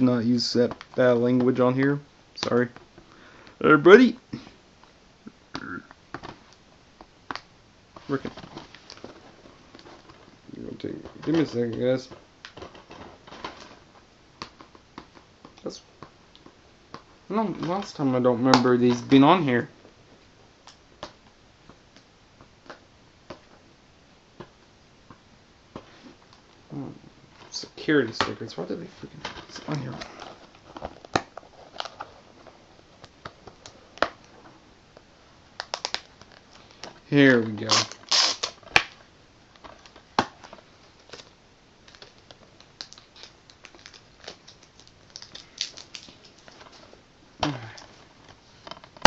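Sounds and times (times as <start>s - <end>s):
plastic clicks and crinkles: 11.0s - 19.2s, 29.1s - 49.0s.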